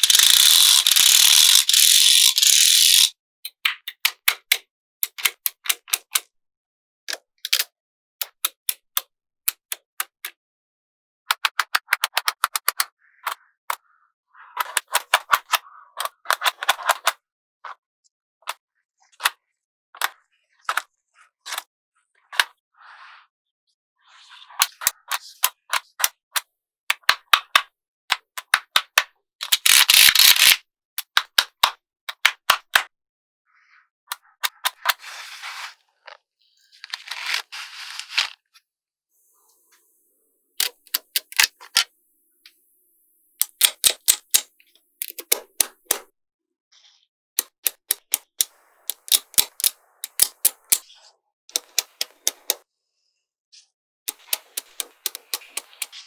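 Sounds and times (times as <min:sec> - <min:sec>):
magnetic balls rattling: 0:00.0 - 0:03.1, 0:29.4 - 0:30.6
magnetic balls clicking together: 0:00.0 - 0:06.2, 0:24.8 - 0:32.8, 0:40.6 - 0:42.6, 0:43.4 - 0:46.1, 0:47.4 - 0:50.8, 0:51.5 - 0:52.6, 0:54.1 - 0:55.9.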